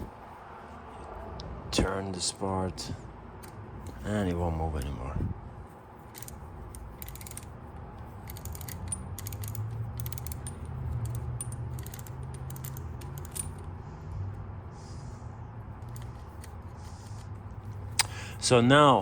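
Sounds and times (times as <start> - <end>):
screwdriver mechanism clicking: 6.1 - 7.5, 8.2 - 13.7.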